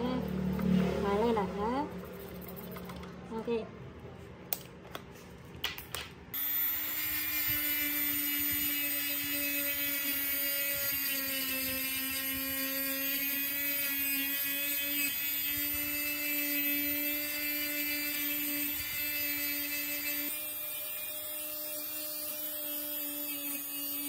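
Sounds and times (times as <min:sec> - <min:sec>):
power tool motor whining: 0:06.4 - 0:24.0.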